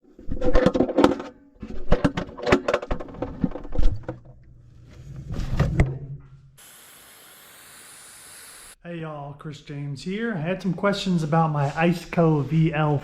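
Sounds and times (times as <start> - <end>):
steady high hiss: 6.6 - 8.8.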